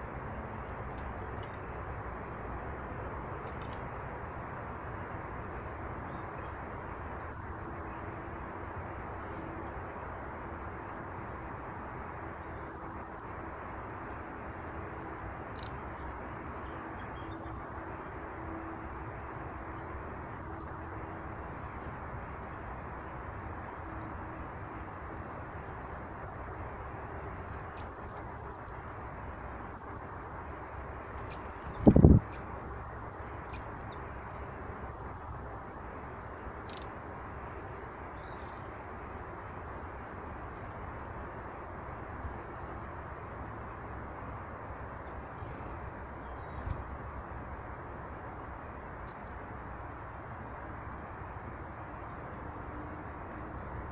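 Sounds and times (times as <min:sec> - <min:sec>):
small birds trilling: 0:15.0 - 0:15.8, 0:27.7 - 0:28.8, 0:29.7 - 0:34.0, 0:34.9 - 0:38.7.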